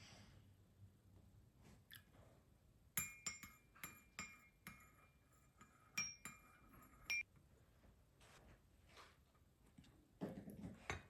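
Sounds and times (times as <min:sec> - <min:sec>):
dishes clinking: 0:03.0 - 0:07.3.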